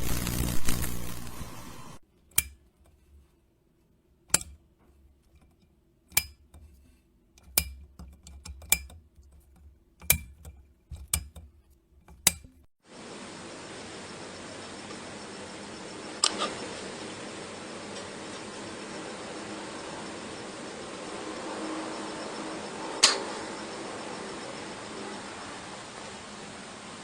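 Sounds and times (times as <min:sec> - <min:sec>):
steady hiss: 0:00.0 - 0:02.0, 0:12.8 - 0:27.0.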